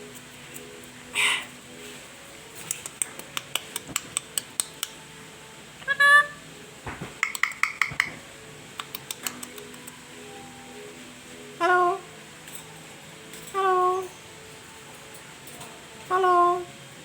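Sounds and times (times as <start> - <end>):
parrot squawk: 1.1 - 1.6, 5.8 - 6.4
sharp clicking taps: 2.6 - 5.0, 6.9 - 8.2, 8.8 - 10.0.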